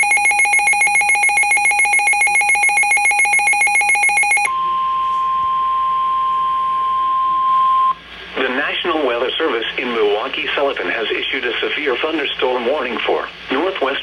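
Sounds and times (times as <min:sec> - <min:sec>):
steady warning alarm tone: 0:00.0 - 0:08.0.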